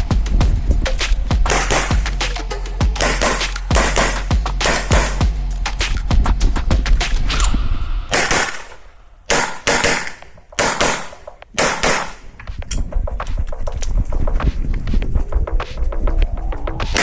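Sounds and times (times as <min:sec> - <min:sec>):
pistol shots: 0:08.1 - 0:08.7, 0:09.3 - 0:12.3.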